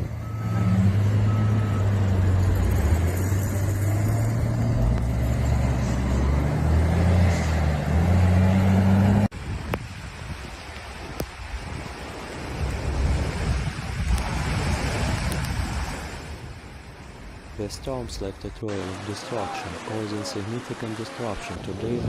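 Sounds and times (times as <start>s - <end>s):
vehicle engine humming: 0.0s - 9.3s
outdoor noise: 0.0s - 17.6s.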